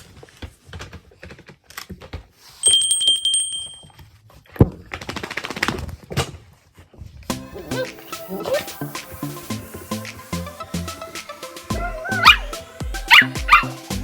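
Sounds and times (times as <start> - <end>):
small bell ringing with rattling trill: 2.6 - 3.9.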